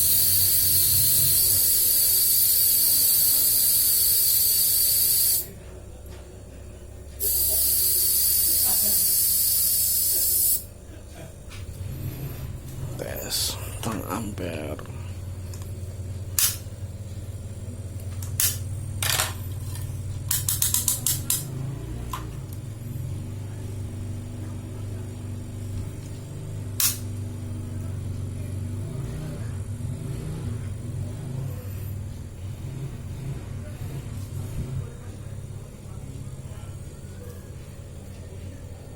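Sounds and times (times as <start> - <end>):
refrigerator compressor humming: 0.0 - 38.9
sharp clicks and taps: 20.3 - 21.5.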